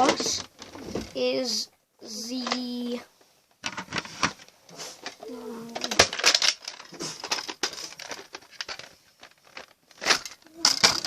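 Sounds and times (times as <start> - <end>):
plastic toy blaster clicks and rattles: 2.4 - 2.8, 5.7 - 11.0
person humming: 5.2 - 6.0.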